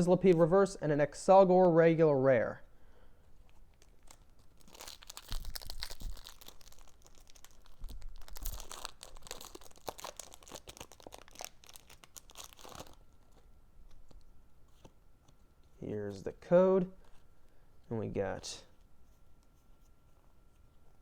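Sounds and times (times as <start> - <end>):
foil wrapper crinkling and tearing: 3.7 - 14.2.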